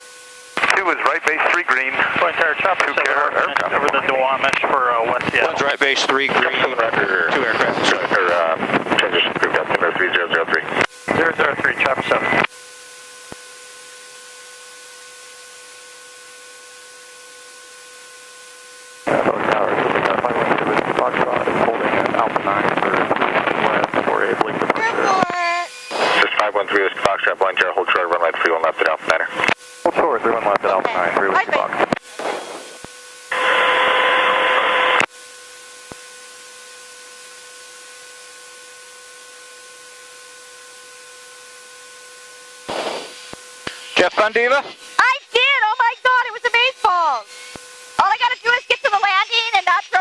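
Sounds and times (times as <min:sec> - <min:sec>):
faint electrical whine: 0:00.0 - 0:50.0
radio hiss: 0:00.0 - 0:50.0
radio click: 0:03.8 - 0:05.8, 0:31.8 - 0:33.0, 0:42.7 - 0:44.1
steady hiss: 0:42.6 - 0:45.1.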